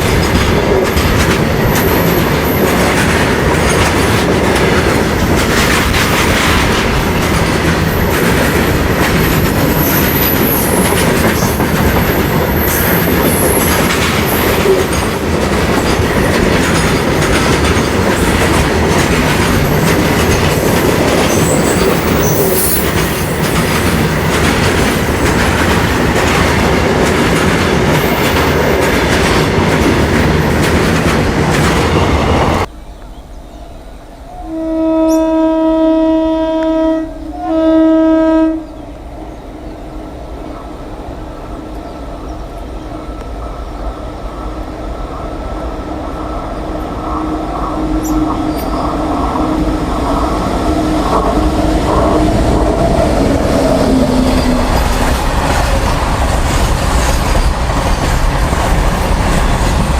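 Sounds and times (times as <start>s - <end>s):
train wheels clattering over rail joints: 0.0s - 32.7s, 51.0s - 59.9s.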